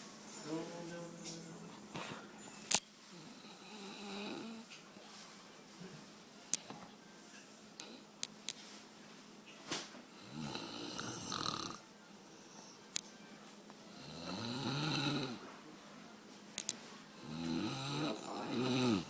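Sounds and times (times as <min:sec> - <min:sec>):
person snoring: 0:03.1 - 0:04.7, 0:10.2 - 0:11.8, 0:13.9 - 0:15.4, 0:17.2 - 0:19.0.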